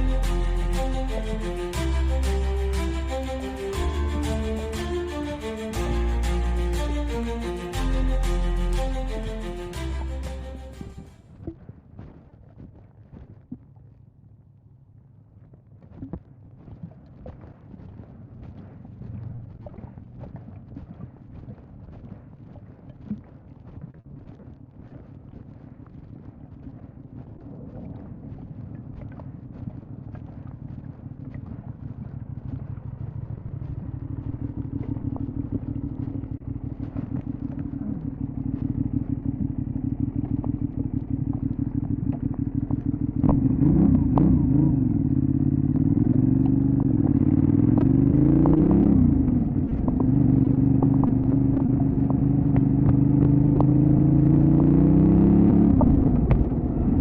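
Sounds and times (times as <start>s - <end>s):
motorcycle engine revving: 33.1s - 57.0s.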